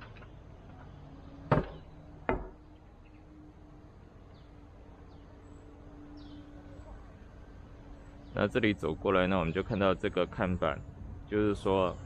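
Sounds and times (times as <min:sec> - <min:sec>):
sharp knocks: 0:01.5 - 0:02.6.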